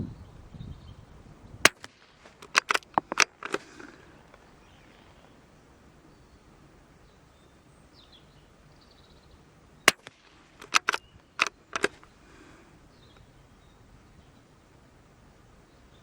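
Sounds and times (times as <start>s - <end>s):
rifle shot: 1.6s - 5.3s, 9.9s - 12.0s
rifle bolt clacking: 1.7s - 5.1s, 9.9s - 12.1s.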